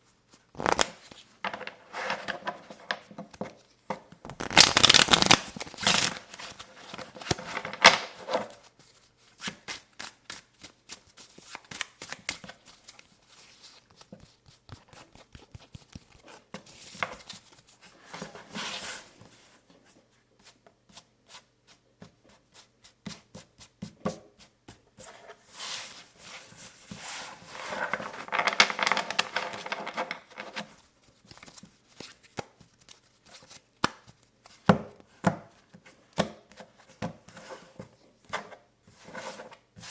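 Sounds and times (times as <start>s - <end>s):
playing cards tapping and clicking: 0.6s - 0.9s, 4.2s - 6.2s, 28.2s - 30.2s
cards shuffling: 0.6s - 1.0s, 4.2s - 8.0s, 14.0s - 16.9s, 27.7s - 30.6s.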